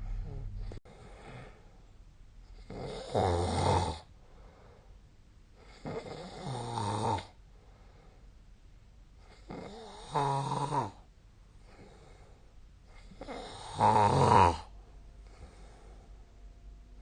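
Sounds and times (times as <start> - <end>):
person snoring: 2.6 - 4.1, 5.7 - 7.3, 9.3 - 11.0, 13.0 - 14.7.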